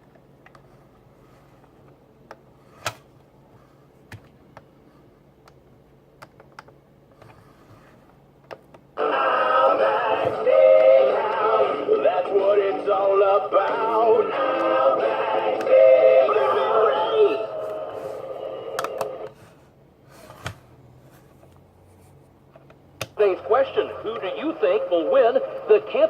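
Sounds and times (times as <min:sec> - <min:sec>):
loud music with singing: 0:09.0 - 0:19.2.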